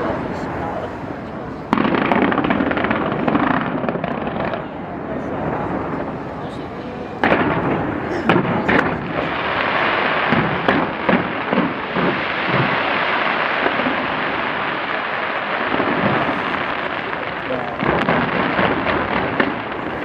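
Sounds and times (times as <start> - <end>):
fireworks bursts and crackle: 0.0 - 20.0
loud firework bangs: 1.6 - 20.0.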